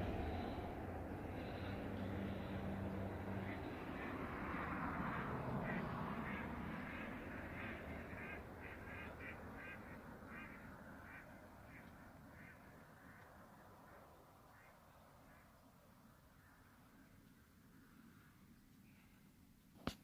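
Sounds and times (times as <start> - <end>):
low rumble: 0.0 - 6.6
ducks quacking: 3.0 - 15.5.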